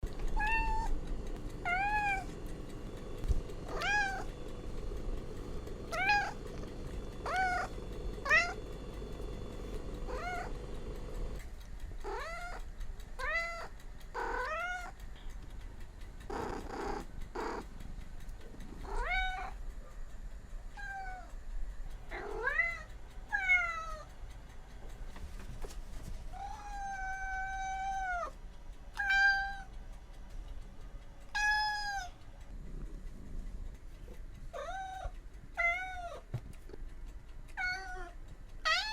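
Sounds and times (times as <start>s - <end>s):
cat meowing: 0.3s - 1.0s, 1.6s - 2.3s, 3.6s - 4.3s, 5.9s - 6.5s, 7.2s - 8.6s, 10.1s - 10.5s, 12.1s - 12.6s, 13.2s - 15.0s, 18.8s - 19.6s, 26.4s - 28.4s, 29.0s - 29.7s, 31.3s - 32.2s, 34.5s - 36.3s, 37.6s - 38.9s.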